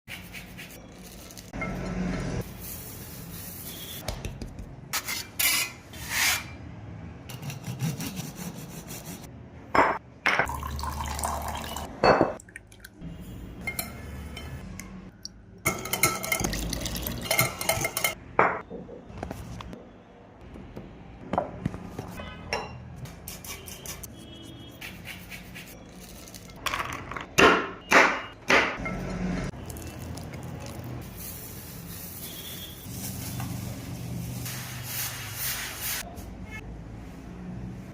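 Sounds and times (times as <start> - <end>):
ingredients being stirred: 0.1 - 6.5, 23.0 - 27.3, 28.9 - 36.1
liquid pouring: 10.5 - 13.0, 16.3 - 17.2, 29.6 - 31.0
utensil clinking against a bowl: 15.7 - 18.2.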